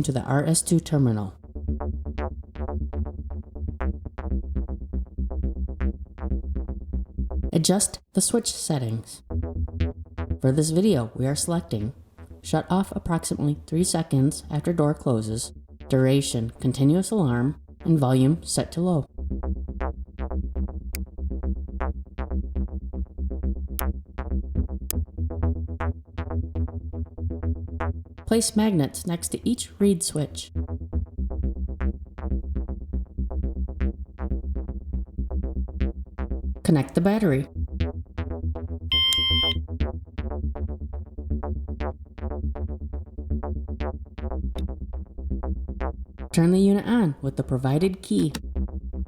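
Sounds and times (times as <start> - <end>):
steady low beat: 0.0 - 7.5, 30.6 - 46.3, 48.2 - 49.0
electronic music with beat: 38.9 - 39.6
plucked synthesizer notes: 38.9 - 39.6.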